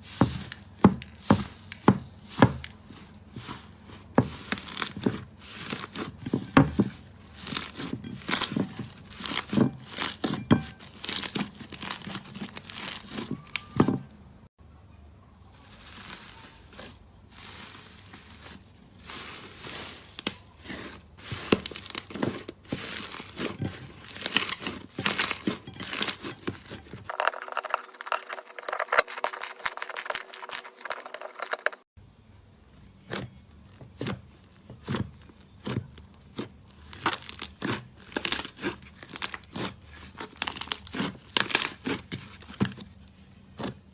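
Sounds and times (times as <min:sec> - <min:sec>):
slime squishing: 0:00.0 - 0:13.8, 0:15.7 - 0:31.8, 0:33.0 - 0:43.9
slime crackling and popping: 0:10.9 - 0:13.2, 0:35.6 - 0:42.0.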